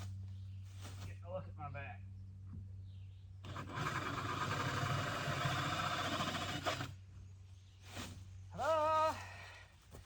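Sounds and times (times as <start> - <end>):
drill cutting into wood: 3.5 - 6.9.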